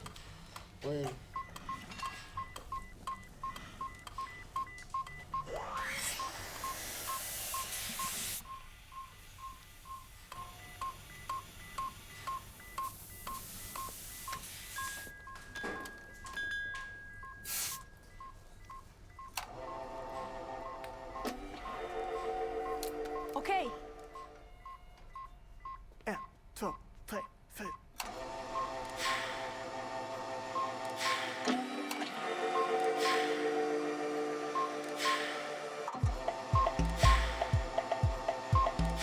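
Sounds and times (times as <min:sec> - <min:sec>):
patient monitor beeping: 0:00.0 - 0:39.0
stacked electronic tones: 0:00.9 - 0:29.0, 0:34.4 - 0:39.0
hiss: 0:05.8 - 0:08.4, 0:12.8 - 0:15.1, 0:17.5 - 0:17.8.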